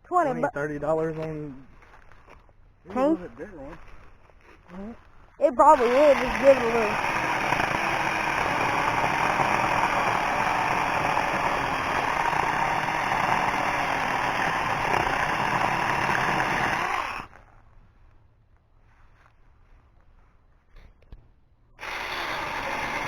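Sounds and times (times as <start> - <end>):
mini chainsaw cutting wood: 5.6 - 17.4, 21.8 - 23.0.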